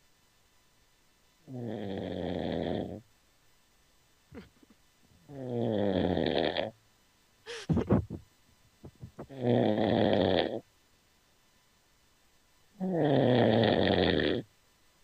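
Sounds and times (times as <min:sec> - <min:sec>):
person snoring: 0:01.5 - 0:03.0, 0:05.3 - 0:06.7, 0:09.2 - 0:10.6, 0:12.8 - 0:14.5.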